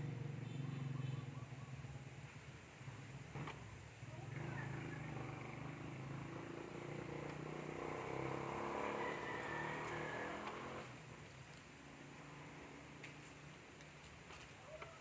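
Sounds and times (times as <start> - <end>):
vehicle engine passing: 4.1 - 11.3.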